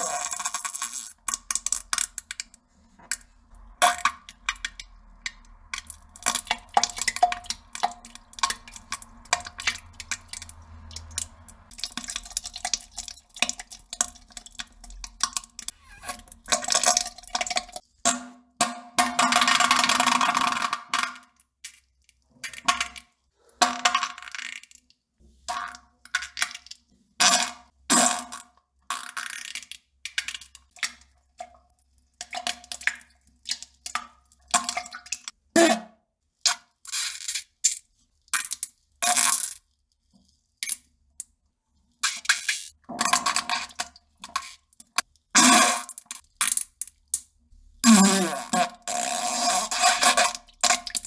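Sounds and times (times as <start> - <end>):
fart sound effects: 15.8 - 16.3, 47.8 - 49.6.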